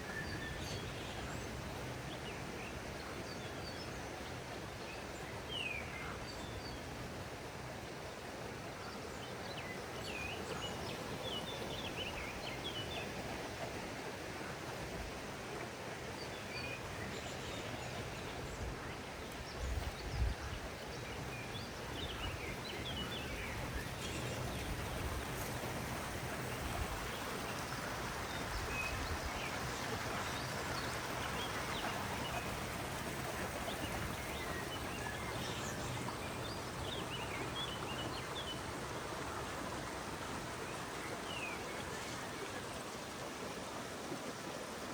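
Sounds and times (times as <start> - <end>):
stream running: 0.0 - 44.9.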